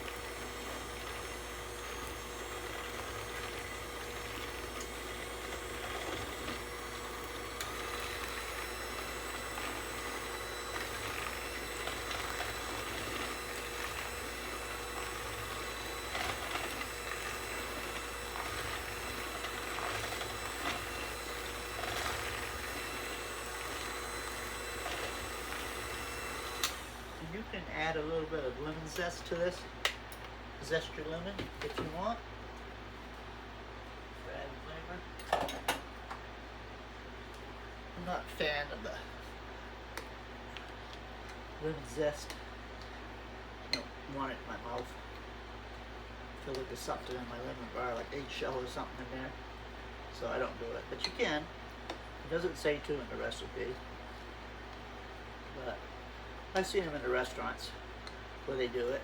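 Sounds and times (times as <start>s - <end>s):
electric hand mixer whirring: 0.0s - 27.5s.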